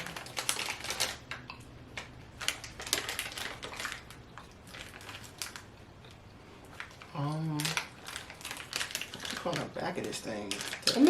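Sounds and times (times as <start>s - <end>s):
snack packaging crinkling: 0.0s - 11.0s.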